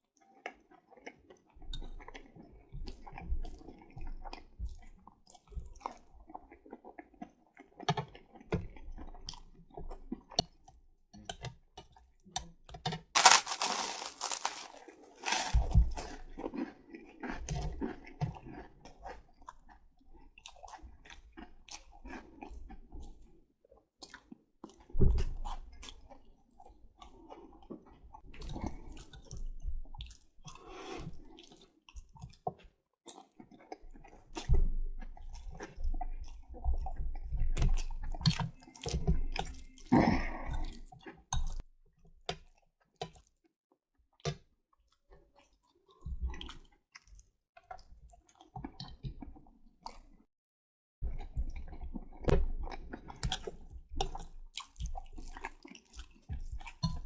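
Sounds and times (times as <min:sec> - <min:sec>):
wet chewing mouth sounds: 0:51.2 - 0:57.0.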